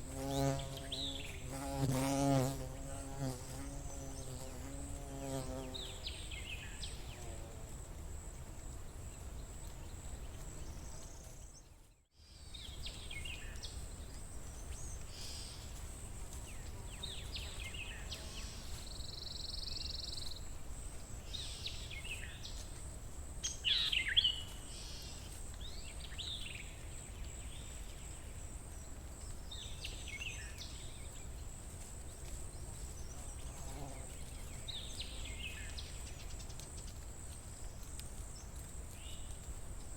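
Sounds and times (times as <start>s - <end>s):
fly buzzing: 0.0s - 5.9s.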